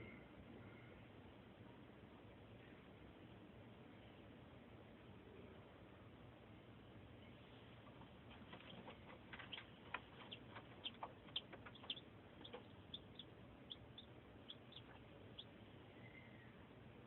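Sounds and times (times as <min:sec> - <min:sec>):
chicks peeping: 0:07.9 - 0:16.5.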